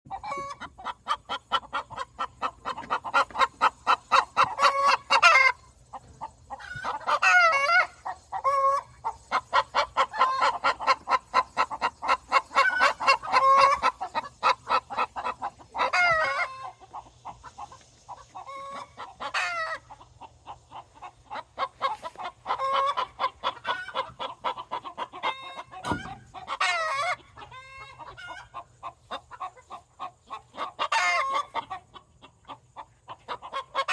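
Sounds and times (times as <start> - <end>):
chickens clucking: 0.1 - 33.9
dull thump: 25.8 - 26.3.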